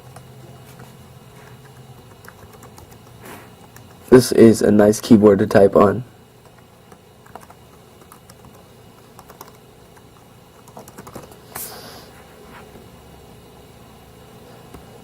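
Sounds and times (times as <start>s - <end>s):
laptop keyboard typing: 0.0s - 4.1s, 6.4s - 11.4s.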